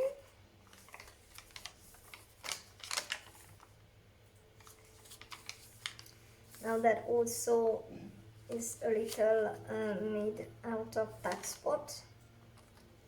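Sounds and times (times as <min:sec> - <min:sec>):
paper pages rustling: 0:00.6 - 0:03.8, 0:04.6 - 0:06.8, 0:11.2 - 0:11.6.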